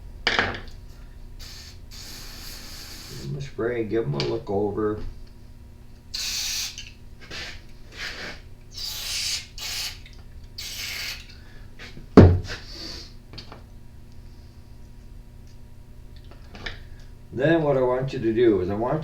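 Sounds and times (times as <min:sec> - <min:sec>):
aerosol spray hissing: 0:01.4 - 0:03.5, 0:06.1 - 0:11.3
sharp loud knock: 0:12.2 - 0:12.5.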